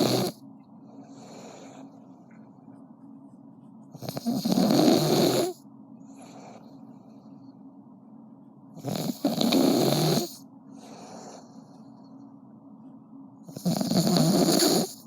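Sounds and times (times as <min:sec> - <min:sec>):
person snoring: 0:00.0 - 0:00.4, 0:04.0 - 0:05.6, 0:08.8 - 0:10.4, 0:13.5 - 0:15.0
faint breaths: 0:00.0 - 0:03.5, 0:05.4 - 0:07.9, 0:10.2 - 0:12.6.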